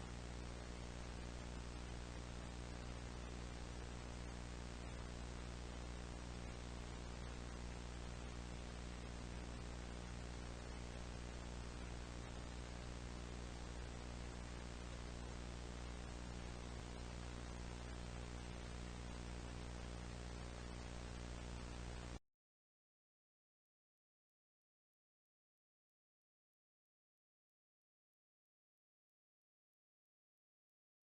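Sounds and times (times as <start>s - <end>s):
low electrical hum: 0.0s - 22.2s
static hiss: 0.0s - 22.2s.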